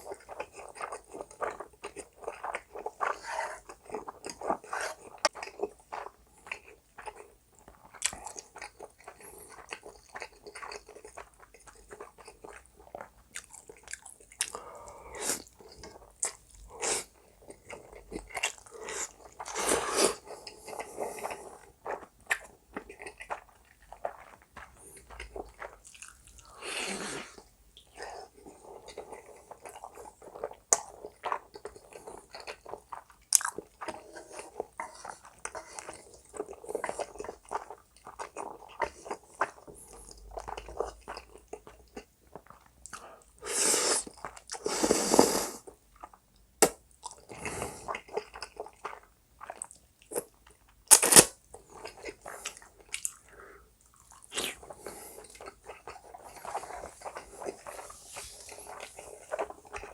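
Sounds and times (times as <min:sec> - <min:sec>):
chewing and biting food: 0:00.0 - 0:14.7, 0:15.4 - 0:26.6, 0:27.4 - 0:43.4, 0:45.6 - 0:59.9
wet mouth noises: 0:50.9 - 0:59.9.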